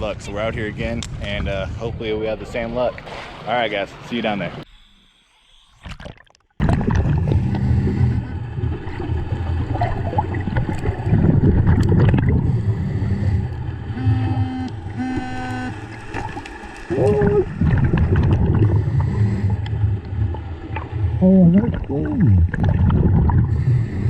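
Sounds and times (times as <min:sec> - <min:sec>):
scuba breathing rumble and bubbling: 0:05.1 - 0:24.0
short humming tones: 0:06.6 - 0:24.0.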